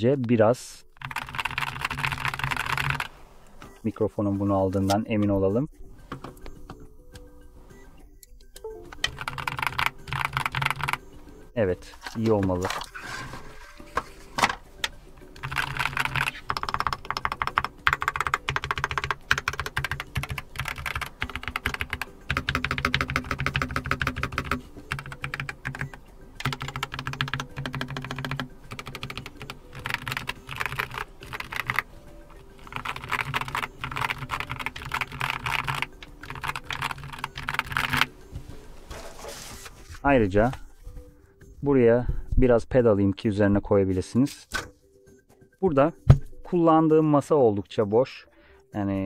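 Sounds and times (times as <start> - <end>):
fast keyboard typing: 1.0 - 3.1, 8.8 - 11.1, 15.3 - 38.1.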